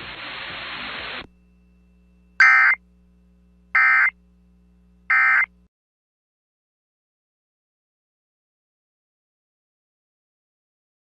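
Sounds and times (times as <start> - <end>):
buzzy digital tone bursts: 2.4 - 2.8, 3.8 - 4.1, 5.1 - 5.5.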